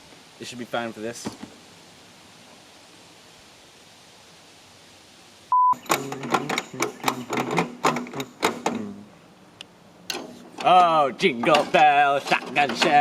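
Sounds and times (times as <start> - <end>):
censor bleep: 5.5 - 6.0
person speaking in broken bursts: 10.6 - 13.0.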